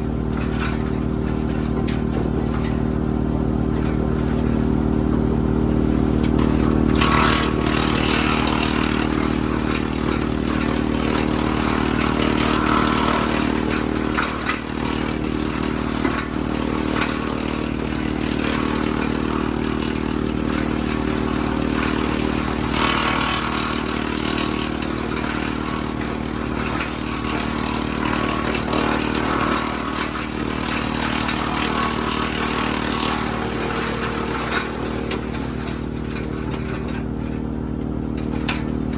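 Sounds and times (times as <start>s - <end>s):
diesel tractor running: 0.0s - 38.9s
wood chipper chipping branches: 0.0s - 38.9s.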